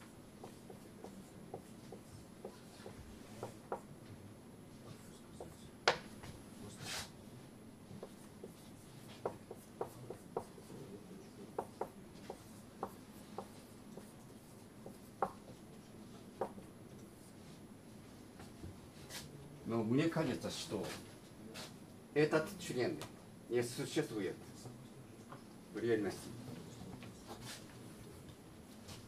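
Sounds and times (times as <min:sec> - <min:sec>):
scratching writing strokes: 0:00.0 - 0:04.1, 0:04.7 - 0:07.2, 0:07.9 - 0:19.3
taps on a board: 0:05.8 - 0:06.4, 0:14.8 - 0:15.4.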